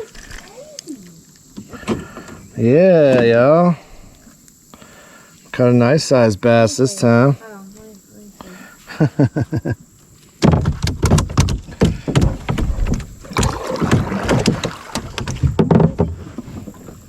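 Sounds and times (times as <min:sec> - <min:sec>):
knocking and rattling against boat hull: 0:10.4 - 0:17.0.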